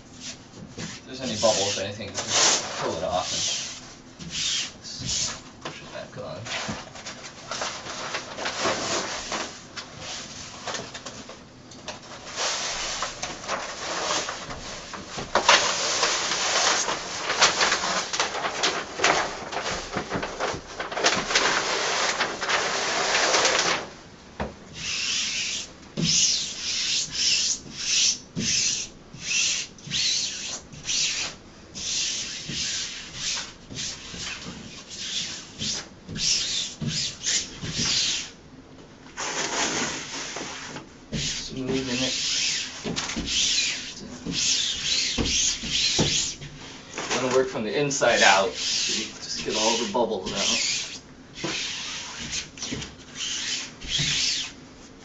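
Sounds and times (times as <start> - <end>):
paper backing peeling and rustling: 0.3 - 5.4, 6.2 - 24.0, 39.2 - 55.0.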